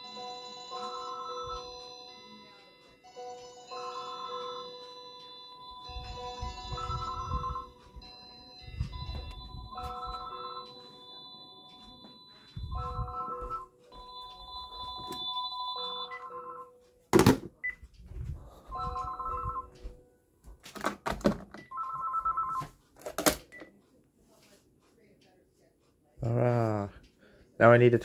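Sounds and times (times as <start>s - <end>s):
electronic phone ringing tones: 0.0s - 16.8s, 18.7s - 19.9s, 21.6s - 22.7s.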